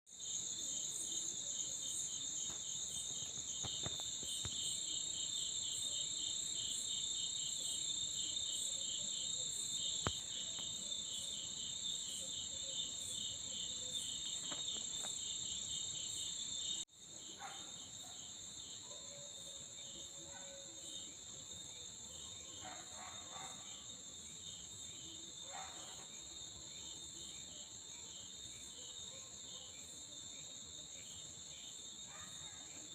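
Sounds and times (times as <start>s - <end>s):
insects trilling: 0.2s - 18.7s
pulsing insect chirp: 0.2s - 18.8s.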